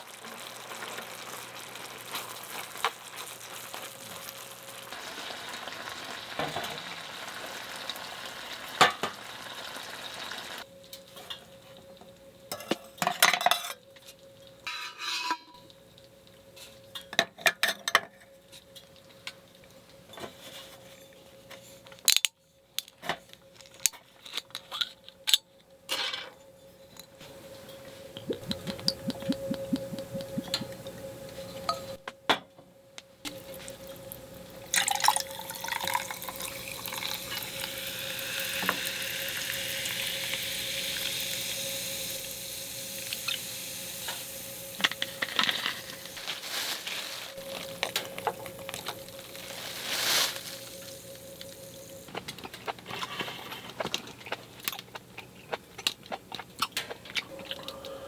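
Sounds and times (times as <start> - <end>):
food sizzling in a pan: 0.0 - 10.7, 33.3 - 52.1
metal utensils clinking on cookware: 12.5 - 13.8, 14.7 - 15.6.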